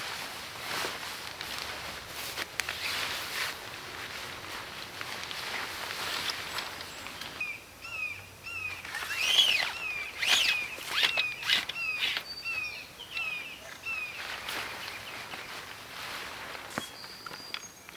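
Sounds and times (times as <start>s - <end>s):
bird chirping: 6.4s - 15.7s, 16.7s - 17.9s.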